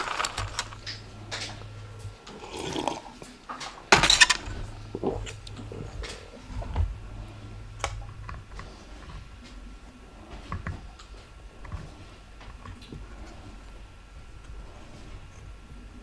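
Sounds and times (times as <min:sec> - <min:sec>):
rustling scrape: 0:00.0 - 0:01.7
small tools clicking and clinking: 0:00.0 - 0:01.7, 0:03.9 - 0:06.2
low hum: 0:00.0 - 0:02.5, 0:03.9 - 0:11.6.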